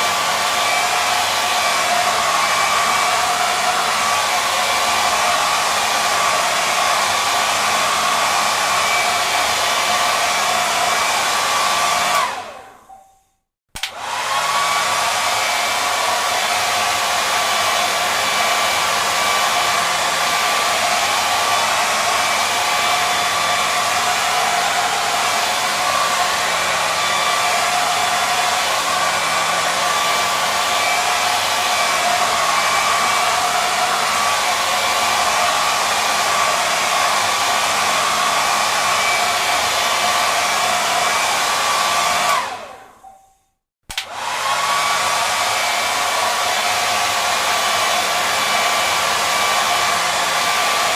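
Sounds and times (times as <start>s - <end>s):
hair dryer running: 0.0s - 13.0s, 13.8s - 43.2s, 43.9s - 50.9s
hair dryer switch click: 13.8s - 14.1s, 43.9s - 44.2s.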